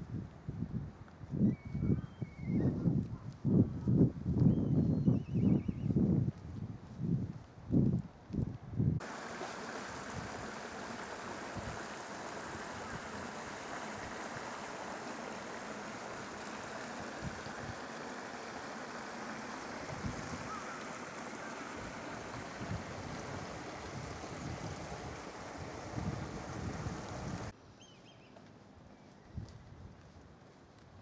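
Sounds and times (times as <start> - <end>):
wind rushing across microphone: 0.0 - 14.6, 19.7 - 20.6, 21.7 - 27.5.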